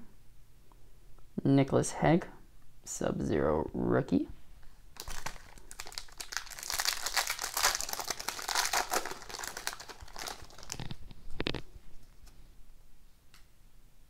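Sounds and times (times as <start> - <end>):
plastic wrapper crinkling: 5.0 - 12.3.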